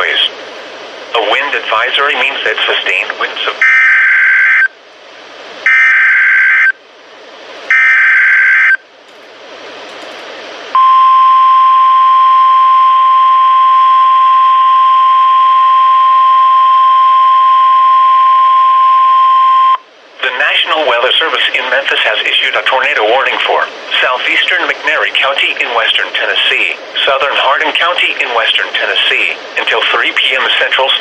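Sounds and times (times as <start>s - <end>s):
radio hiss: 0.0s - 0.4s, 1.1s - 3.6s, 20.2s - 31.0s
steady warning alarm tone: 3.6s - 4.8s, 5.7s - 6.8s, 7.7s - 8.8s, 10.8s - 19.8s.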